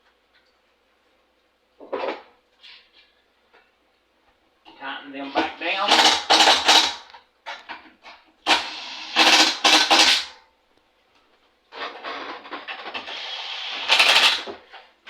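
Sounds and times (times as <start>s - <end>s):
impact driver rattling: 5.4s - 7.7s, 8.5s - 10.4s, 11.8s - 14.8s.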